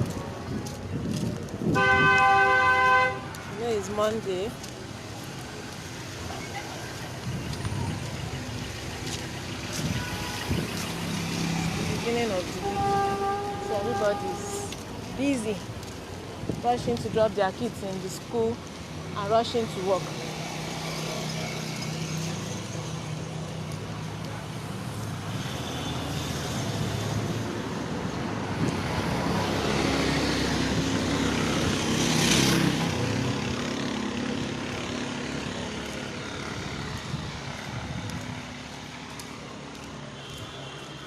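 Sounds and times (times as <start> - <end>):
traffic engine drone and tyre noise: 0.0 - 41.0
vehicle passing close by: 26.1 - 39.9.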